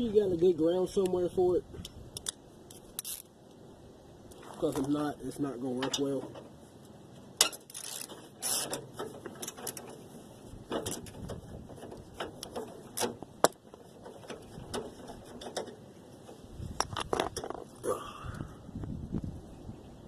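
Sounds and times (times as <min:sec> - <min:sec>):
ratchet wrench clicking: 0:03.0 - 0:03.3, 0:07.4 - 0:08.8.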